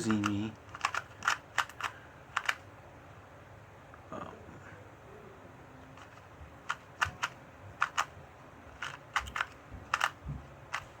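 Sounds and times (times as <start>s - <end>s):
puzzle cube layers clicking: 0.0s - 2.6s, 6.0s - 8.1s, 8.8s - 10.9s.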